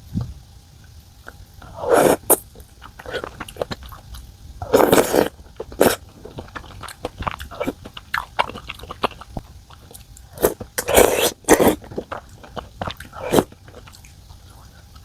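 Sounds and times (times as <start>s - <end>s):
person chewing food: 1.2s - 15.0s.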